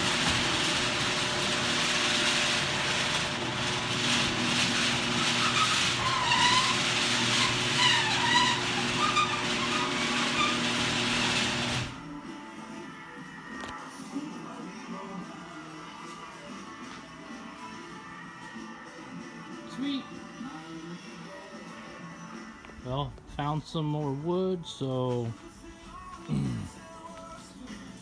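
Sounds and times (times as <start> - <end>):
door squeaking: 0.0 - 12.0
garage door opener motor: 0.0 - 12.2.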